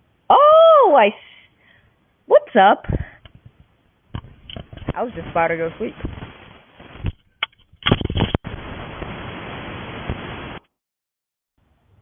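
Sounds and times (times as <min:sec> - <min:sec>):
steady hiss: 0:02.9 - 0:07.1.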